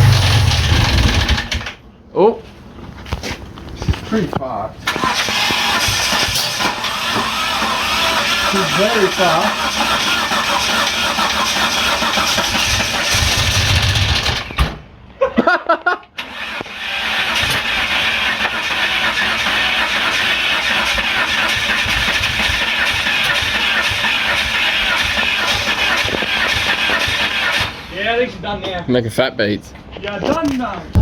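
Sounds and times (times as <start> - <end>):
vehicle engine running: 0.0 - 1.5, 17.3 - 27.9.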